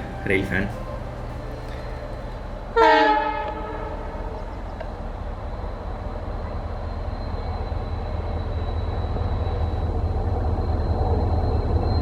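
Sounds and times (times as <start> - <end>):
train horn blast: 0.0 - 4.6
train rumbling: 0.0 - 12.0.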